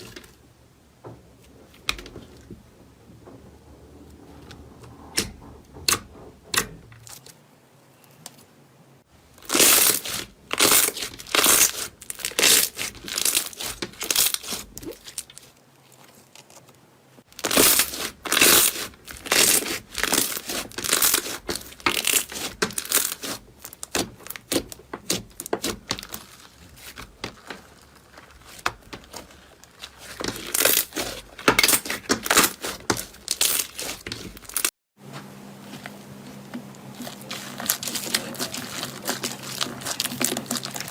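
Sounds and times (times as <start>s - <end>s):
slime crackling and popping: 9.4s - 15.5s, 17.3s - 34.7s, 37.0s - 40.9s.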